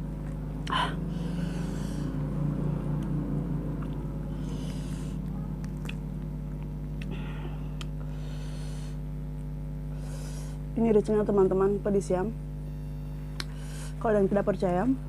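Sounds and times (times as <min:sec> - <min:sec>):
electrical hum: 0:00.0 - 0:15.0
person chewing: 0:00.1 - 0:00.8, 0:02.9 - 0:08.1
wet smacking: 0:04.7 - 0:07.2.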